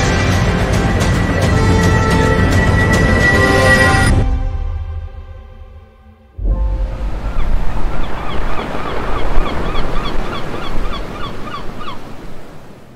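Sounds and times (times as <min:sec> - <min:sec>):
wind rumble on microphone: 0:06.4 - 0:12.9
sea waves washing on shore: 0:06.7 - 0:12.9
birds calling: 0:06.9 - 0:12.9.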